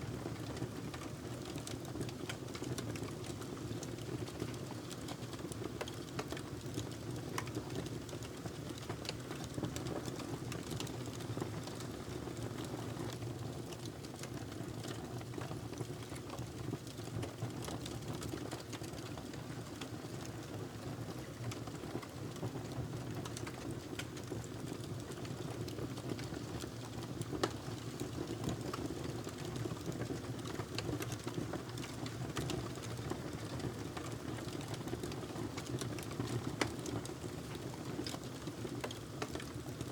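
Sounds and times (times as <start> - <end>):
wood fire crackling: 26.3 - 39.6.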